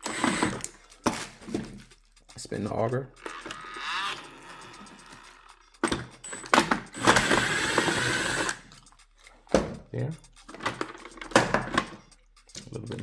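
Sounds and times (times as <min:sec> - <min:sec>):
ice dispenser motor whir: 0:00.0 - 0:01.7, 0:03.2 - 0:08.7
ice dispenser clicks and rattles: 0:00.0 - 0:01.9, 0:05.8 - 0:08.6.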